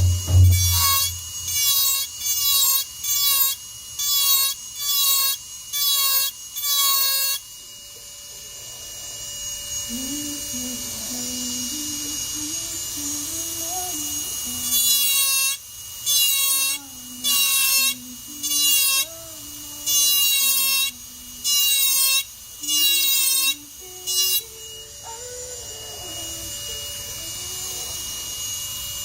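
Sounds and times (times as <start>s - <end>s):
faint low melody: 0.0s - 1.1s
engraving handpiece buzzing: 0.0s - 29.0s.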